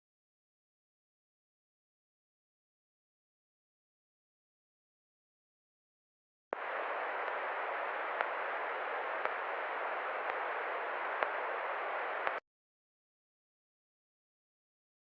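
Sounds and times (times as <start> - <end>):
faint clicks: 6.6 - 12.4
static-like hiss: 6.6 - 12.4.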